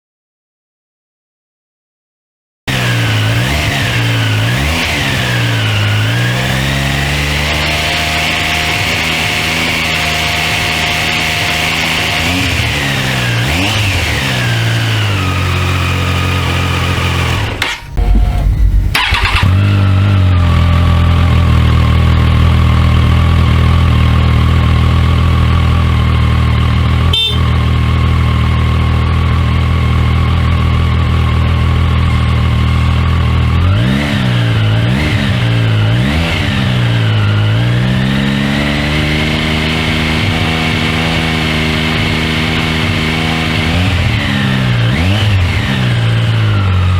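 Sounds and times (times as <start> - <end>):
motorcycle engine idling: 7.2 - 33.8
loud low thump: 17.7 - 19.0
throttle blips: 17.8 - 19.4.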